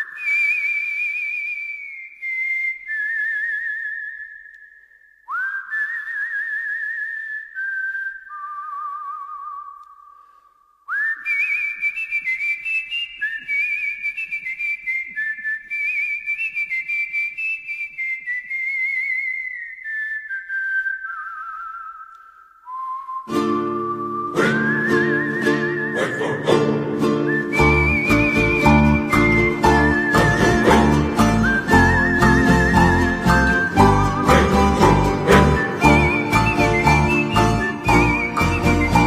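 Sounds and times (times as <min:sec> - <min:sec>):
whistled melody: 0:00.0 - 0:10.2, 0:10.9 - 0:39.0
plucked guitar: 0:23.3 - 0:39.0.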